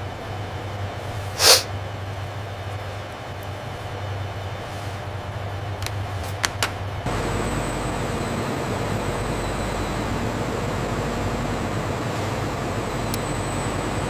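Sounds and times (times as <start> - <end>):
factory machinery hum: 0.0 - 14.0
dense machine noise: 6.9 - 14.0
thin high whine: 7.1 - 14.0.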